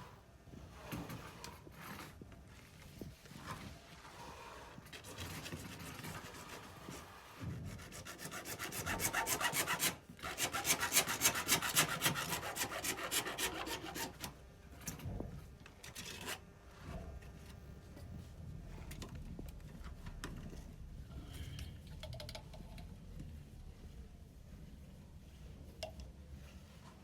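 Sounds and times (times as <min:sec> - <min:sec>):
hand tool rasping: 0:07.8 - 0:14.3.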